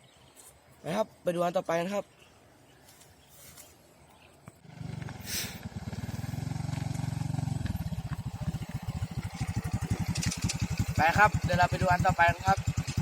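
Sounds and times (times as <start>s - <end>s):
small motorcycle engine running: 4.6s - 13.0s.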